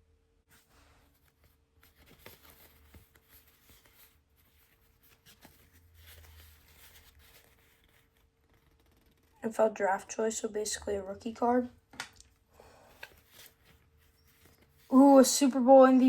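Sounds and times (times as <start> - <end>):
paper cards rustling: 0.5 - 10.0, 11.8 - 15.2.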